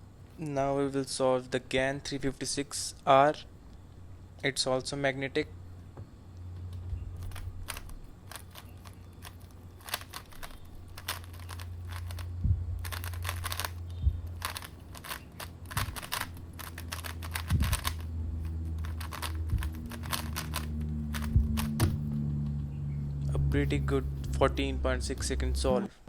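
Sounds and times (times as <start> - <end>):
steady low hum: 0.0 - 26.0
puzzle cube clicking: 7.2 - 22.0.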